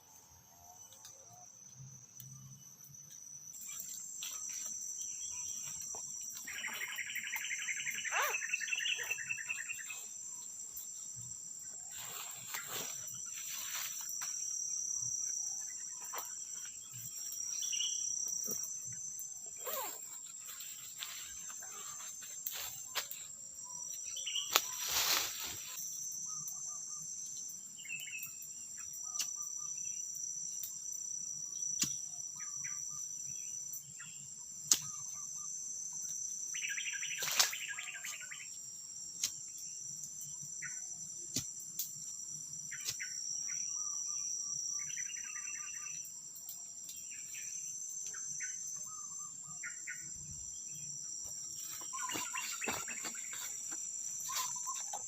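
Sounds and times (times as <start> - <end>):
insects whining: 0.0 - 55.0
crackles and rustles: 18.3 - 23.4, 24.5 - 25.8.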